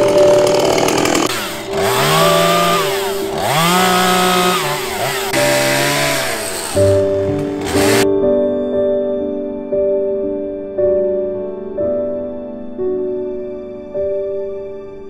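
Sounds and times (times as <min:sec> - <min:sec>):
chainsaw cutting wood: 0:00.0 - 0:08.0
chainsaw engine revving: 0:00.0 - 0:08.0.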